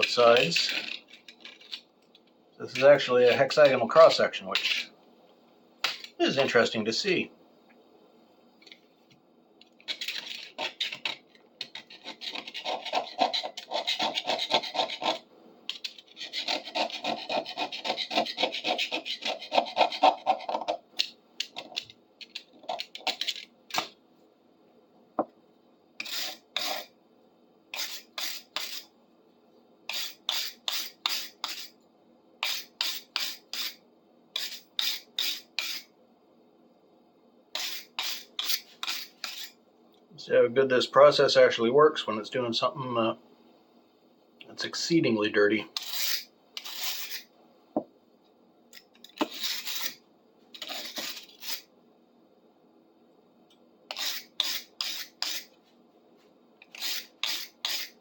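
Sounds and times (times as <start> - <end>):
scrubbing metal poker by hand: 9.9 - 20.8, 21.4 - 23.8, 26.0 - 26.9, 27.7 - 28.9, 29.9 - 31.8, 32.4 - 33.8, 34.4 - 35.9, 37.6 - 39.6, 45.8 - 47.3, 49.1 - 50.0, 50.6 - 51.7, 53.9 - 55.5, 56.6 - 58.0.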